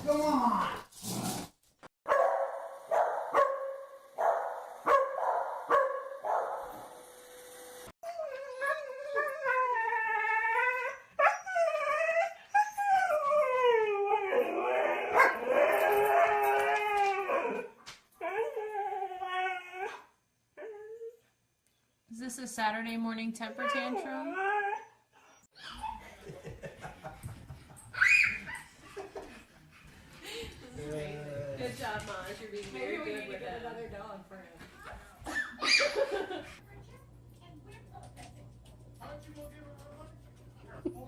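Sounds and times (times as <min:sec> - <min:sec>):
dog barking: 0:02.1 - 0:06.7, 0:15.1 - 0:15.4
dog howling: 0:08.0 - 0:20.0.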